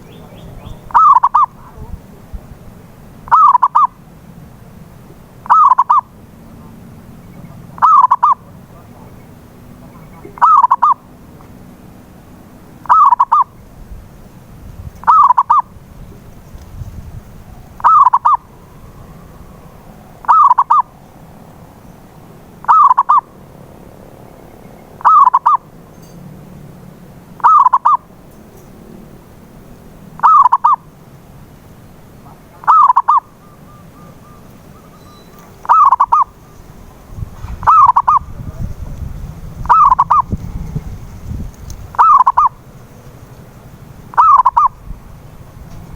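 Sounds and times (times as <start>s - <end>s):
dove cooing: 0.0s - 1.8s, 3.3s - 4.0s, 5.4s - 11.1s, 12.8s - 13.6s, 15.0s - 16.4s, 17.8s - 21.0s, 22.6s - 23.4s, 25.0s - 25.7s, 27.4s - 28.1s, 30.2s - 30.9s, 32.3s - 36.8s, 37.6s - 38.6s, 39.6s - 40.6s, 41.9s - 42.8s, 44.1s - 44.8s.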